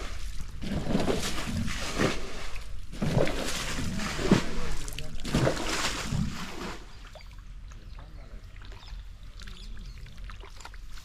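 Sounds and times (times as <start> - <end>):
water splashing and sloshing: 0.0 - 11.0
water dripping: 2.6 - 11.0.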